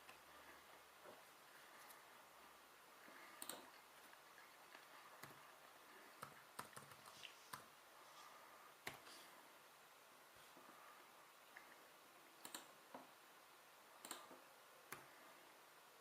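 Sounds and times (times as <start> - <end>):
faint sharp clicks: 12.4 - 12.7.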